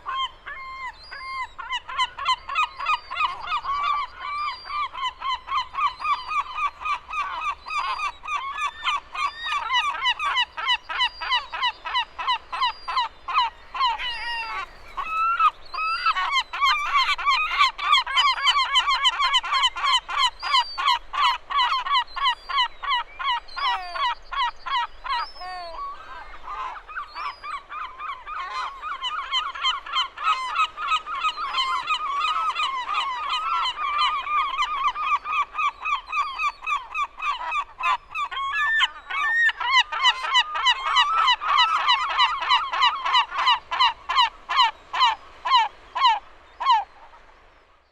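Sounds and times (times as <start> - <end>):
gulls calling: 0.0 - 47.8.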